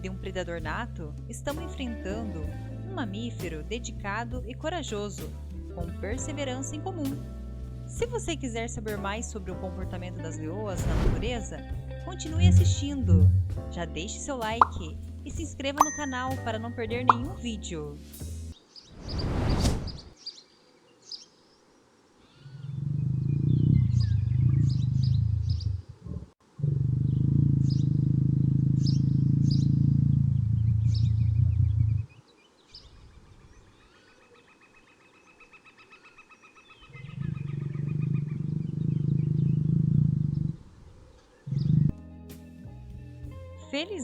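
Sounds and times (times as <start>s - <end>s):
small birds chirping: 18.6s - 19.2s, 19.8s - 26.2s, 27.0s - 28.1s, 28.7s - 42.0s
lion growling: 22.4s - 32.1s, 36.9s - 42.0s.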